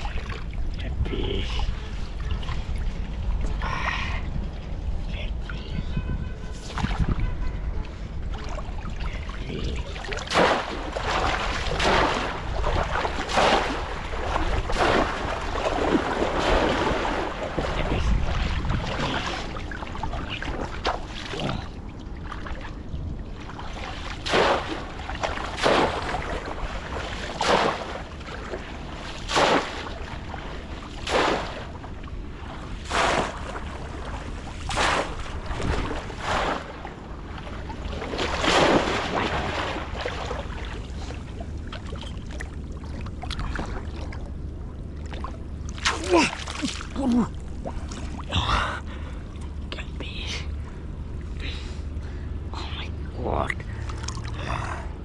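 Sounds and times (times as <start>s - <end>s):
wind rumble on microphone: 0.0s - 45.8s
water splashing: 8.2s - 49.6s.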